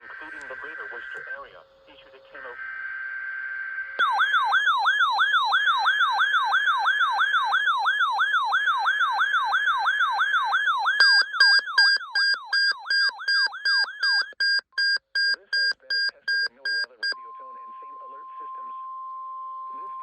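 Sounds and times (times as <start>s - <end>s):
electronic alert siren: 0.1s - 14.6s
on-off beeping: 2.3s - 4.8s.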